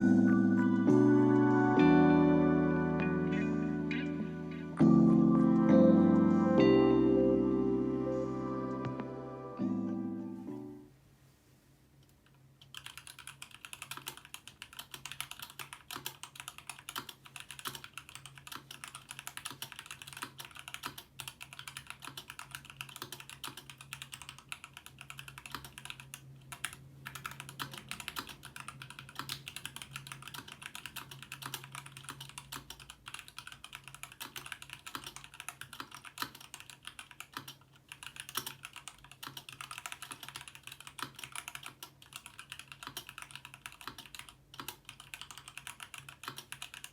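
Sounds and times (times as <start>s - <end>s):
mechanical keyboard keys clacking: 12.6s - 46.9s.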